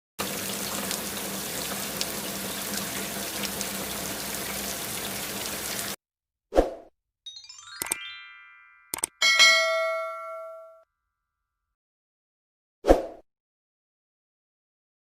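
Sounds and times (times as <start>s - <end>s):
running water: 0.2s - 6.0s.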